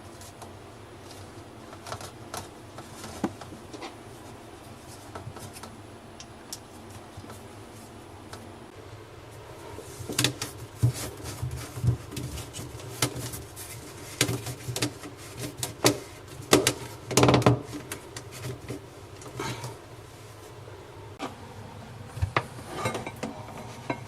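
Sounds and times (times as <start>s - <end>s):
knocks and clicks of handling: 10.1s - 19.6s.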